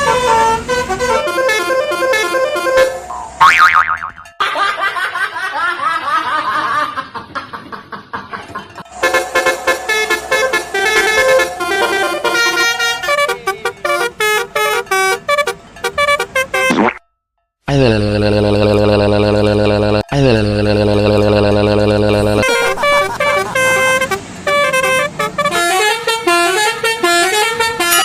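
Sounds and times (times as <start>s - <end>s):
multi-tone bus horn melody: 0.0s - 3.6s, 8.8s - 16.8s, 17.8s - 28.0s.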